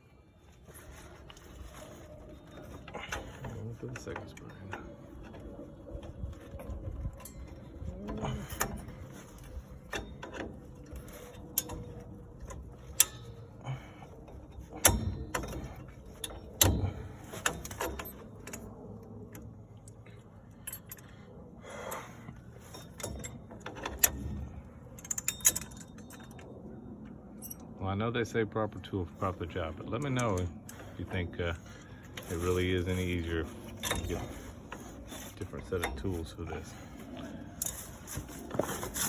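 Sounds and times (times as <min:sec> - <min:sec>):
metal spring clinking on brake: 0:07.2 - 0:18.7, 0:22.6 - 0:26.6.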